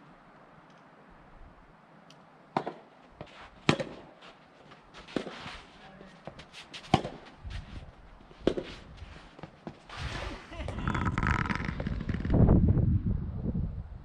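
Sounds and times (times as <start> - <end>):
rackets hitting soft balls: 2.5 - 4.2, 5.0 - 7.4, 8.4 - 9.9
light clicks and scuffing: 3.0 - 9.9.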